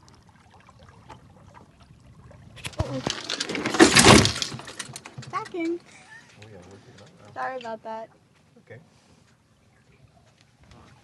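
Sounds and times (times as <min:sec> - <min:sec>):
crackling rush of water: 0:00.0 - 0:05.4
water lapping along hull: 0:00.0 - 0:11.0.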